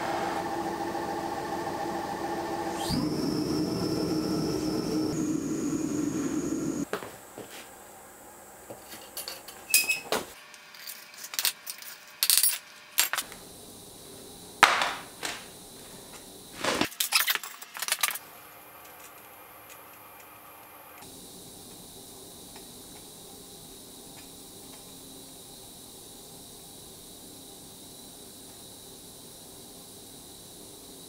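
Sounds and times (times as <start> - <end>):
metal tools clinking: 8.8 - 10.1, 10.7 - 13.2.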